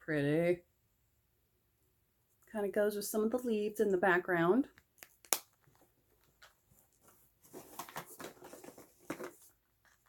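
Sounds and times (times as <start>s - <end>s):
soft rustling of packages: 4.7s - 10.0s.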